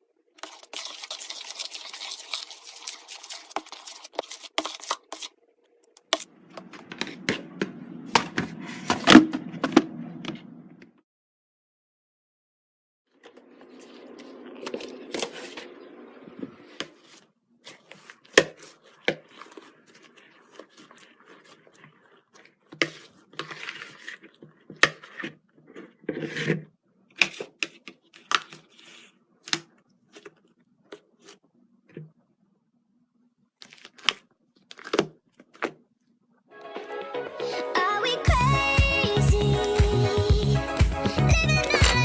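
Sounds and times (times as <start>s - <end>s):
slime scraping rustle: 0.4s - 5.4s, 13.4s - 31.5s, 33.6s - 35.7s.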